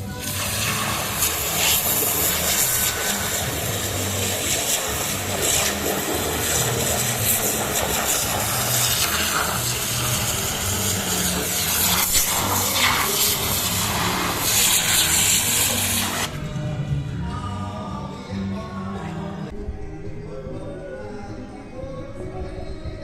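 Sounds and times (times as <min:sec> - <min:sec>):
water pump running: 0:00.0 - 0:16.4.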